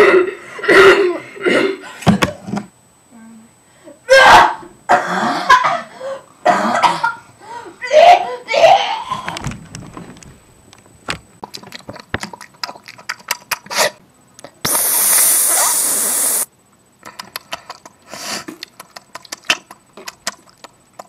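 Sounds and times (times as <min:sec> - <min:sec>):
loud steady hiss: 0:14.6 - 0:16.5.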